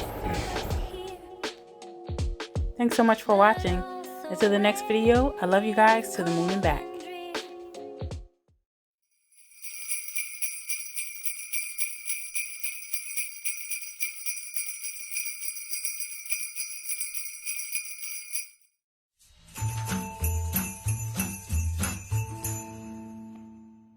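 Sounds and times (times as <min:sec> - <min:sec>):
sleigh bells jingling: 0:09.2 - 0:18.7, 0:19.6 - 0:23.0.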